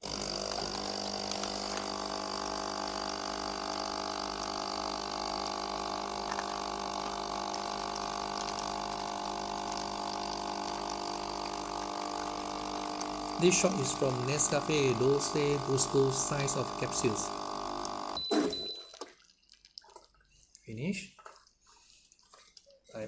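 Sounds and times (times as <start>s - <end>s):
espresso machine pump humming: 0.0s - 18.2s.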